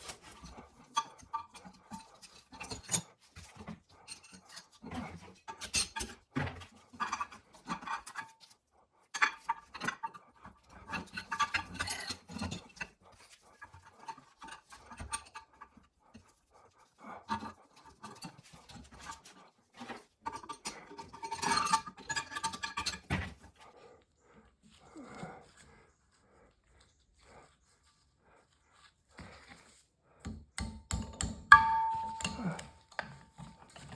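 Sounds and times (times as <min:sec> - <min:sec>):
metal parts clinking and scraping: 0:05.6 - 0:06.1, 0:11.0 - 0:12.8, 0:20.3 - 0:23.1.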